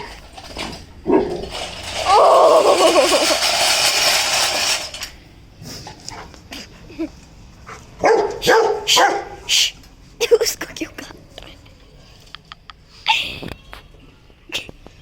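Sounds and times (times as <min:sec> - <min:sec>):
puppy barking: 0:08.0 - 0:09.4.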